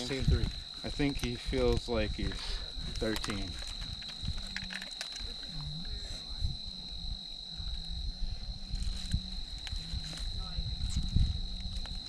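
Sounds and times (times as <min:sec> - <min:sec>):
handling noise: 0:00.0 - 0:05.9
crickets trilling: 0:00.0 - 0:12.0.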